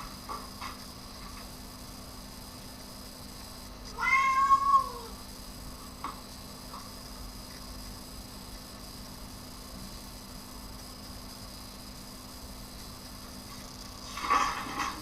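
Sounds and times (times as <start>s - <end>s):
cat meowing: 3.9s - 5.2s.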